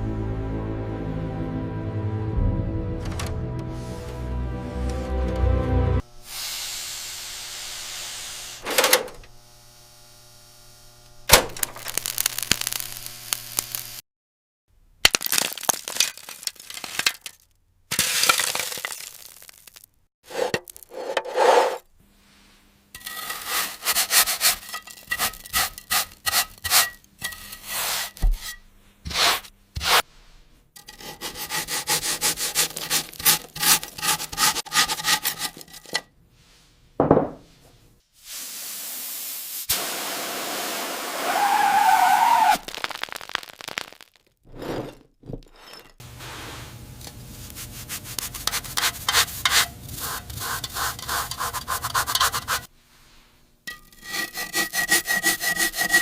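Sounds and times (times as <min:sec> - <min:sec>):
scraping on rusty metal: 0:20.3 - 0:21.8, 0:23.0 - 0:30.0, 0:30.8 - 0:36.1, 0:48.3 - 0:52.7, 0:53.7 - 0:56.0.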